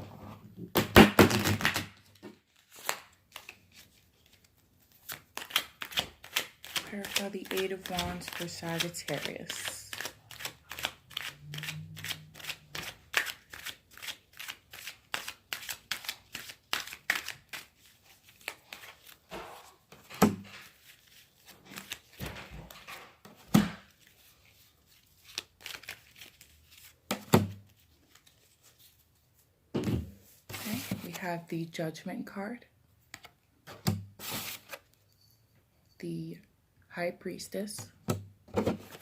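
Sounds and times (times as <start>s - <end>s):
cards being shuffled: 1.2s - 29.1s, 30.2s - 31.3s.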